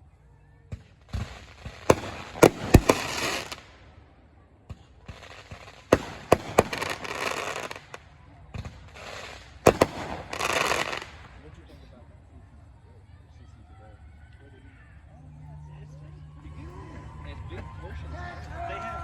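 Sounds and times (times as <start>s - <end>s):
fireworks bangs and crackling: 0.7s - 11.6s.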